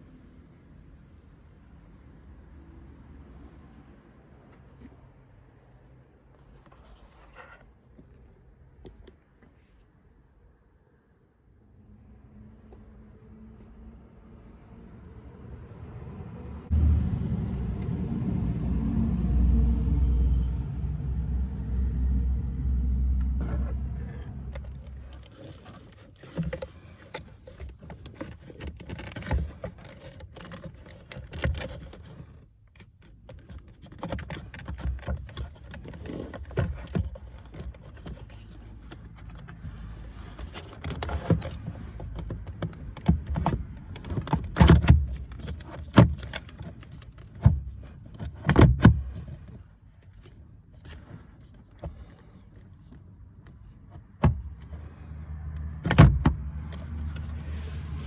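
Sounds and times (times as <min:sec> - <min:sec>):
clicks and knocks of parts handled: 0:24.5 - 0:55.0.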